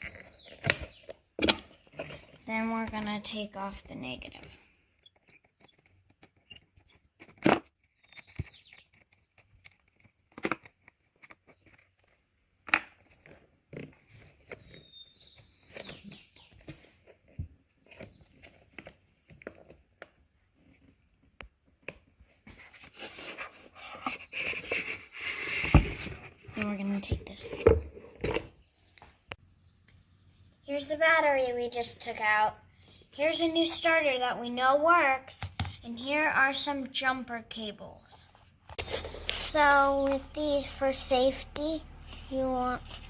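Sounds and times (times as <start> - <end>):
metal clicks and scraping: 5.0 - 13.4.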